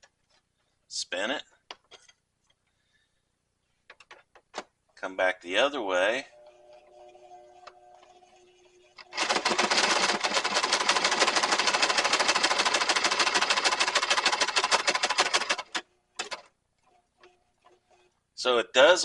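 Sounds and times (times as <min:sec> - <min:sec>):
sewing machine stitching leather: 0:06.5 - 0:18.2.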